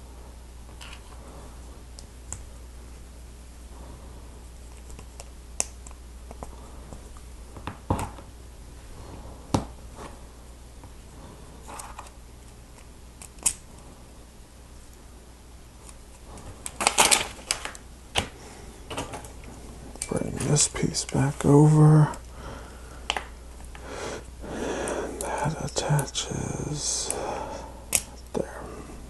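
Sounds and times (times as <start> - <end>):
plastic pieces snapping together: 16.6 - 19.2, 23.0 - 23.8
plastic pieces rattling: 16.7 - 17.8.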